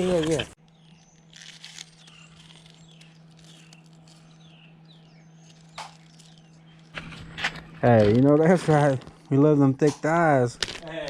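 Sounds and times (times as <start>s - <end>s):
birds chirping: 0.0s - 11.0s
steady low hum: 0.0s - 11.0s.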